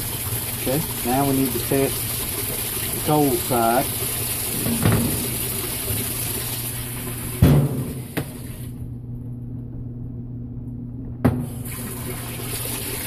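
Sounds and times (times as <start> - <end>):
water rushing into tub: 0.0 - 8.8, 11.4 - 13.0
low steady hum: 0.0 - 12.8.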